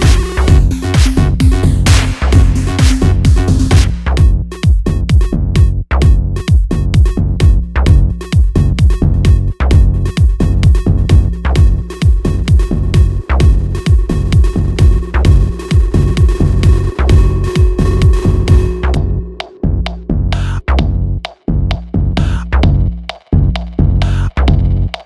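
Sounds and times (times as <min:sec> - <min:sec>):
electronic dance music: 0:00.0 - 0:05.4, 0:06.0 - 0:20.7.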